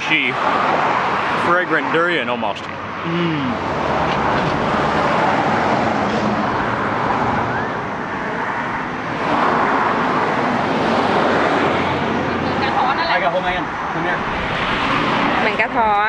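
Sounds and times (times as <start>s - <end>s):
road traffic passing: 0.0s - 16.0s.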